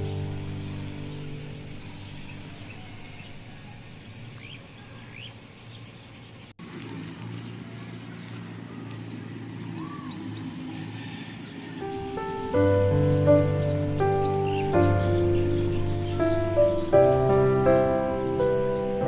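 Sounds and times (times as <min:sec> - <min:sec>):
outdoor rural ambience: 0:00.0 - 0:19.0
rising bird chirps: 0:09.7 - 0:19.0.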